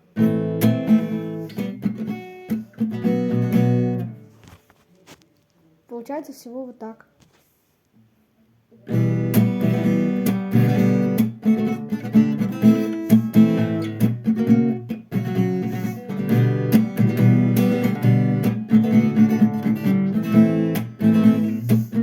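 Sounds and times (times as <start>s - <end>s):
acoustic guitar strumming: 0.0s - 4.2s, 8.9s - 22.0s.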